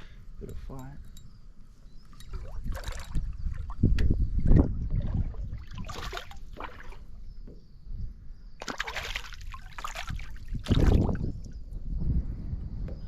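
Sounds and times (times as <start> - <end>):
water splashing by a boat: 2.1 - 7.6, 8.6 - 11.6.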